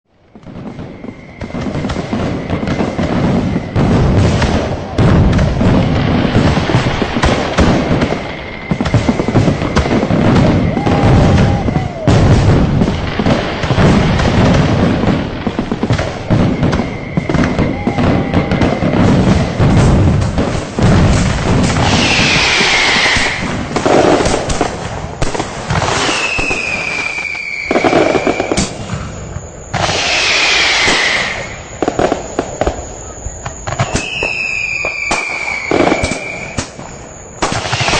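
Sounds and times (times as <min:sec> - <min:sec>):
firecrackers crackling: 0:00.1 - 0:37.9
low rumble of booms: 0:00.3 - 0:25.8.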